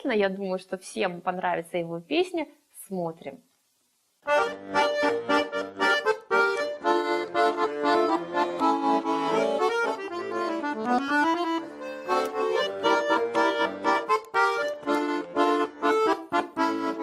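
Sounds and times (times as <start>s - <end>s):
button accordion playing: 4.3s - 17.0s.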